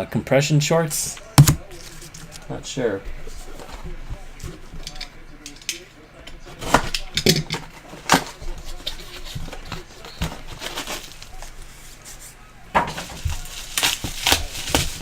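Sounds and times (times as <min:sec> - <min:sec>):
packaging rustling: 0:00.8 - 0:15.0
cards tapping and clicking: 0:01.1 - 0:05.9.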